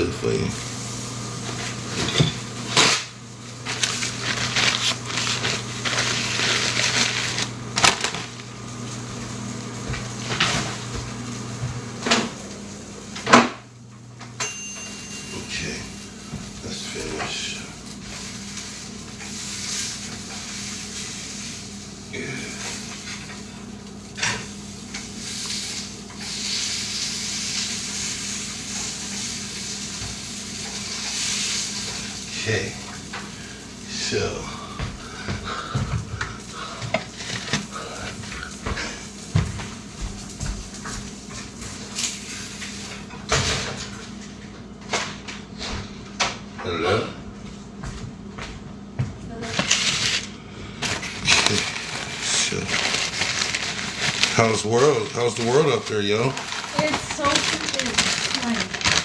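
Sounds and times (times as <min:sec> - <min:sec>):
steady low hum: 0:00.0 - 0:11.8
crunching and crackly rustling: 0:03.5 - 0:10.9, 0:49.4 - 0:59.0
food sizzling in a frying pan: 0:18.1 - 0:33.8.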